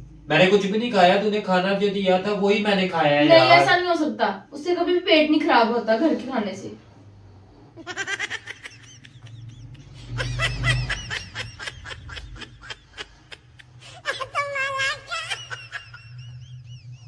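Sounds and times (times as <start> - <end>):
person giggling: 7.8 - 17.0
person snickering: 7.8 - 17.0.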